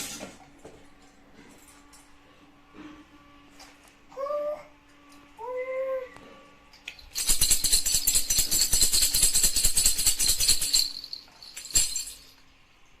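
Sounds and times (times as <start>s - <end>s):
baby rattle shaken: 7.0s - 12.4s.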